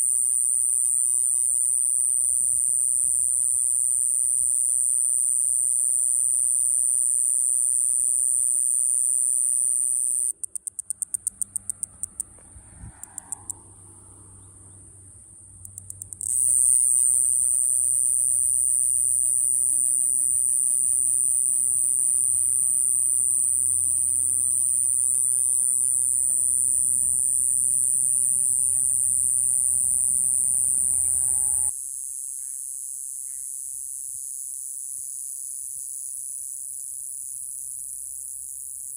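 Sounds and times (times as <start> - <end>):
cicada clicking pulses: 0.0 - 13.8, 15.3 - 31.7
cicada high-pitched buzz: 0.0 - 38.9.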